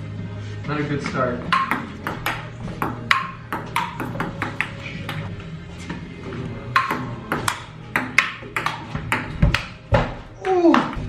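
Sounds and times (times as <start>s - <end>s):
music playing: 0.0s - 11.0s
ping pong ball hits: 1.5s - 5.4s, 6.7s - 11.0s.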